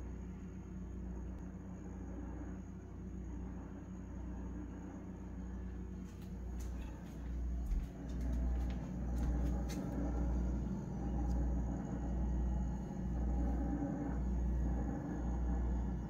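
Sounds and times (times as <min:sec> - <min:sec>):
appliance grinding rumble: 0:02.0 - 0:16.0.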